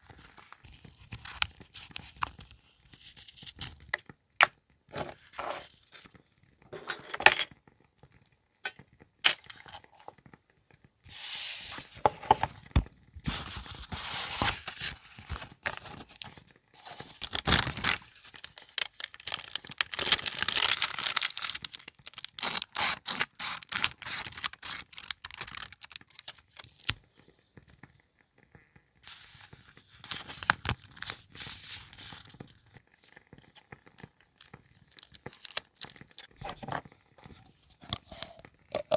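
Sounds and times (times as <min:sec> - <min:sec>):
paper tearing and crinkling: 0:13.3 - 0:27.0, 0:29.1 - 0:32.4, 0:34.4 - 0:36.8.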